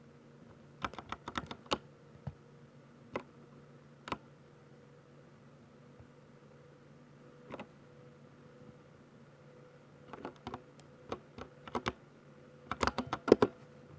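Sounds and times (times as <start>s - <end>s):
mechanical keyboard key presses: 0.8s - 1.8s, 10.1s - 12.0s, 12.7s - 13.6s.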